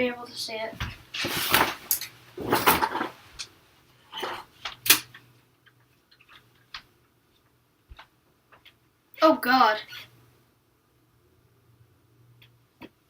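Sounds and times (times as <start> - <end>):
rustling: 0.8 - 3.5.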